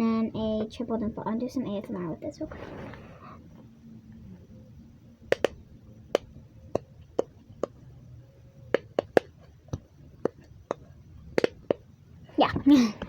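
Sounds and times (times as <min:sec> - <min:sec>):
silicone fidget toy popping clicks: 0:05.3 - 0:07.8, 0:08.7 - 0:11.9.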